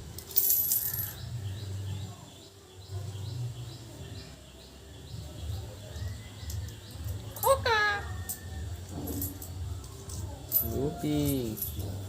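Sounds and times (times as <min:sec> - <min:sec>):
bird chirping: 0:01.1 - 0:08.8.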